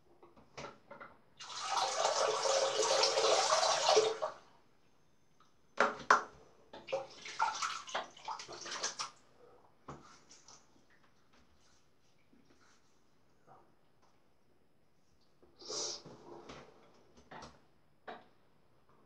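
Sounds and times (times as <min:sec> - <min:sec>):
tap water running: 0:01.4 - 0:04.4
short water splashes: 0:06.8 - 0:09.2.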